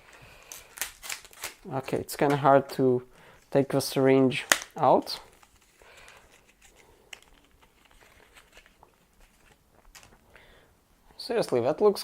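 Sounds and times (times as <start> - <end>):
plastic packaging crinkling: 0.1 - 2.0, 4.4 - 10.3.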